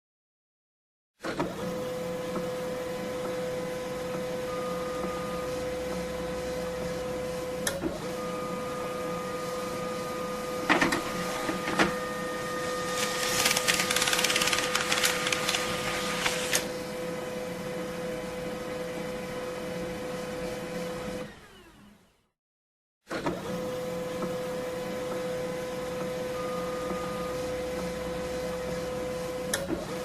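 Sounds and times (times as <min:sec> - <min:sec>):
printer motor hum: 0:01.6 - 0:17.9
fast dense printer rattling: 0:12.8 - 0:16.6.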